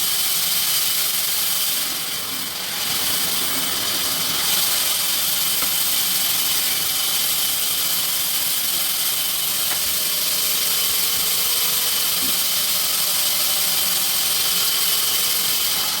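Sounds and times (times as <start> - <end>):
sawmill machinery whining and hissing: 0.0 - 16.0.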